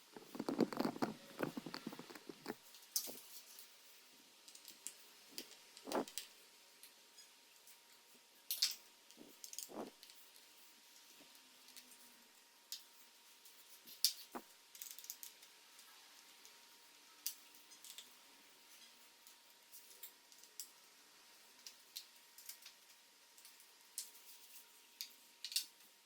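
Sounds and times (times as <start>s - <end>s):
hands handling laptop parts clicking: 0.1s - 3.5s.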